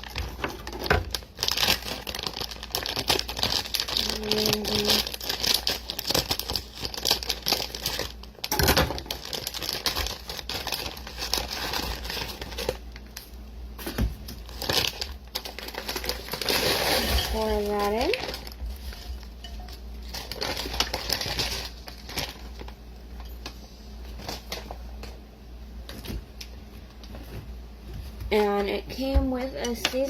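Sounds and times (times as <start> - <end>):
plastic bag crinkling: 0.0 - 13.2, 13.8 - 25.2.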